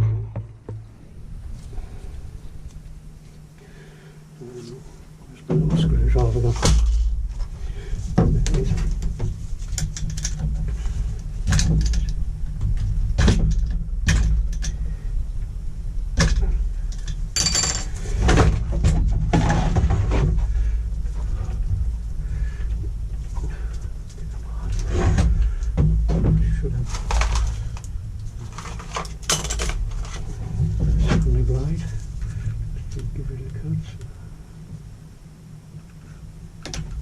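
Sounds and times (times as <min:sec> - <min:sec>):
steady low hum: 0:00.0 - 0:37.0
metallic ringing clatter: 0:17.4 - 0:18.2.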